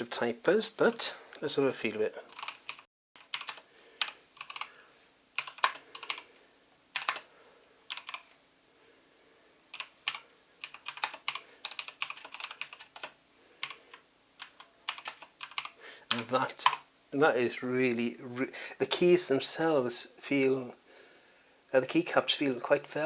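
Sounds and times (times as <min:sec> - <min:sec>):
mechanical keyboard typing: 0:02.3 - 0:04.7, 0:05.4 - 0:06.3, 0:07.0 - 0:07.3, 0:07.9 - 0:08.3, 0:09.7 - 0:16.8.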